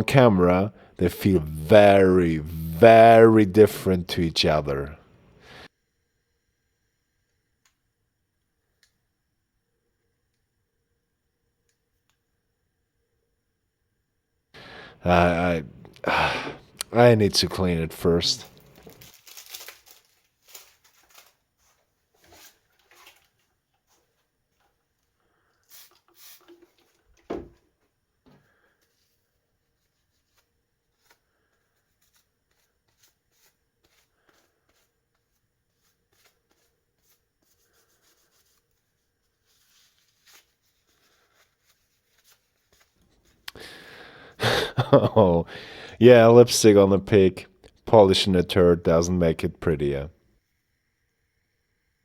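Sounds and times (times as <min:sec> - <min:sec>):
rubbing and handling noises: 0:14.6 - 0:45.0.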